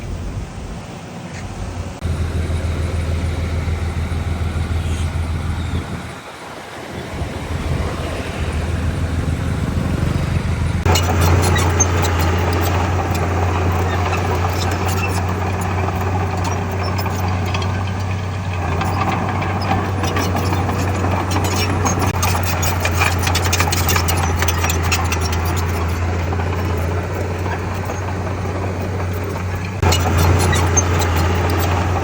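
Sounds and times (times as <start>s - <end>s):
heavy diesel engine droning: 0.0s - 32.0s
metal clanks and rattles: 9.9s - 32.0s.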